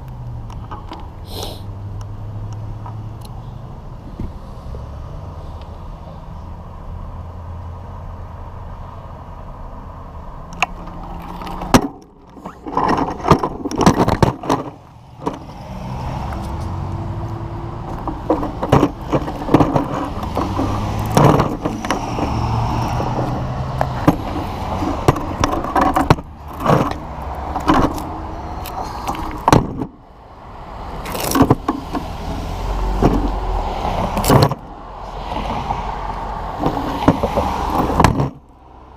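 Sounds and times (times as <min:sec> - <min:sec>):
road traffic rumble: 0:00.0 - 0:38.9
sharp knocks and rattles: 0:10.6 - 0:15.5, 0:17.9 - 0:28.0, 0:29.0 - 0:30.0, 0:31.1 - 0:32.2, 0:32.9 - 0:33.4, 0:36.6 - 0:38.4.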